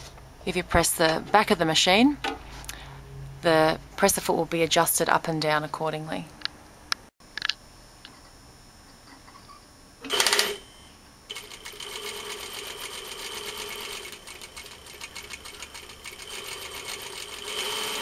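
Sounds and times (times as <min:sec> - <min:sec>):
sewing machine stitching: 0:10.1 - 0:10.6, 0:11.3 - 0:18.0.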